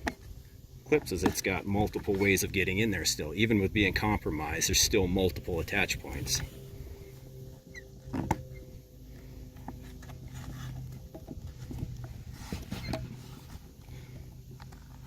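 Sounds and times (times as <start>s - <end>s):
steady low hum: 0.0s - 15.0s
strap clicks and rustling: 9.5s - 15.0s.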